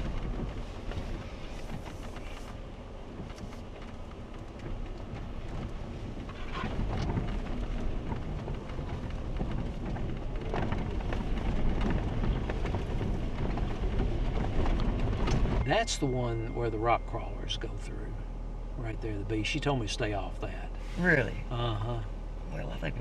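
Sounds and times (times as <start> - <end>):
body knocks and rattles: 0.0 - 15.8
engine and tyres rumbling: 0.0 - 23.0.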